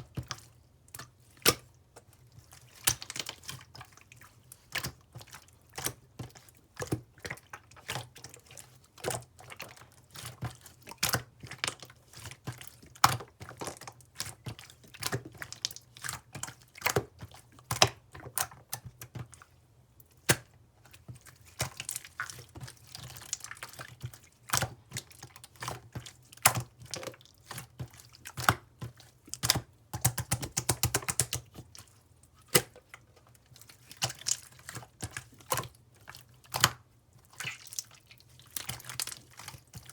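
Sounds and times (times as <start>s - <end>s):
wet clicks and pops: 29.4s - 31.4s.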